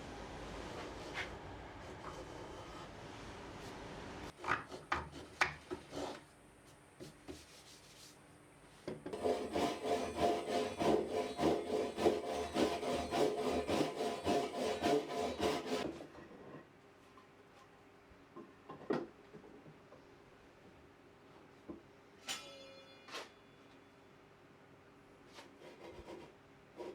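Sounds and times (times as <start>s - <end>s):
hand tool scraping wood: 4.4s - 6.3s, 9.1s - 16.2s
rasping strokes on wood: 4.6s - 6.2s, 9.1s - 16.0s.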